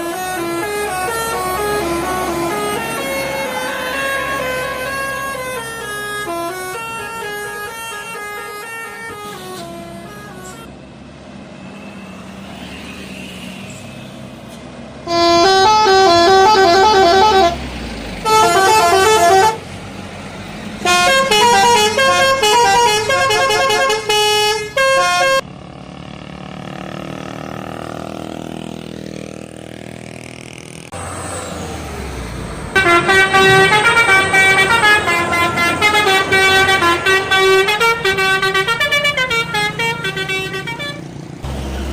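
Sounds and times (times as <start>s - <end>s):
bus horn melody: 0.0s - 10.7s, 15.0s - 19.7s, 20.8s - 25.4s, 32.7s - 41.2s
engine and traffic noise: 0.0s - 41.9s.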